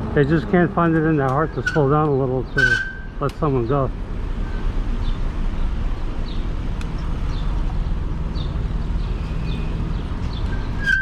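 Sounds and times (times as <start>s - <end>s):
low rumble of e-bike riding: 3.6s - 11.0s.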